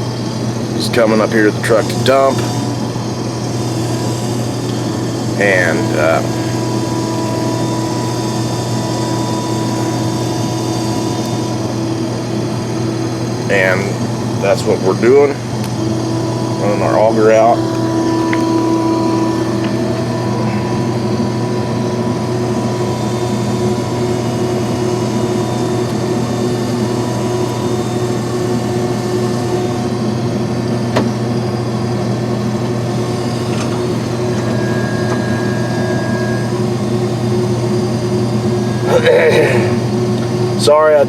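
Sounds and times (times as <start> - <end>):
combine harvester running: 0.0 - 41.0
auger unloading corn: 33.0 - 37.3.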